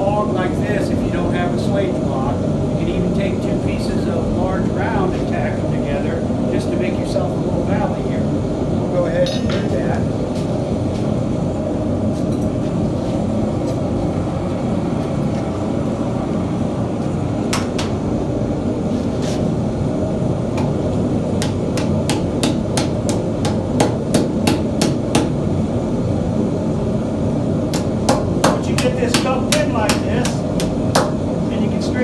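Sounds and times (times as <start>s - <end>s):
hammer striking steel plate: 21.4s - 25.4s, 27.8s - 31.2s.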